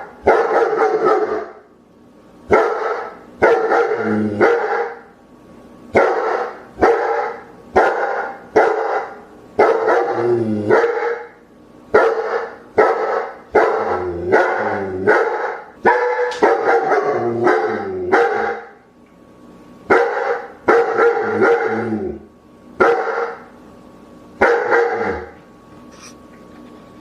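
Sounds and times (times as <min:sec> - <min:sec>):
dog barking: 0:00.0 - 0:01.6, 0:02.5 - 0:05.1, 0:06.0 - 0:18.8, 0:19.9 - 0:21.8, 0:22.8 - 0:23.5, 0:24.4 - 0:25.3.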